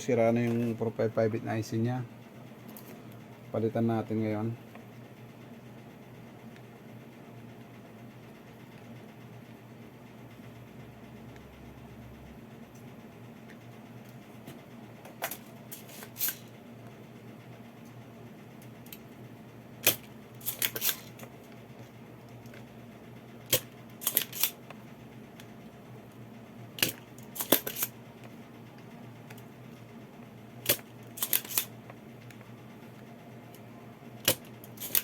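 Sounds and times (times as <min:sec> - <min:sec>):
low electrical hum: 0:00.0 - 0:35.0
desoldering pump snapping and clicking: 0:19.8 - 0:21.6, 0:23.4 - 0:24.8, 0:26.8 - 0:29.5, 0:30.6 - 0:32.5, 0:33.5 - 0:35.0.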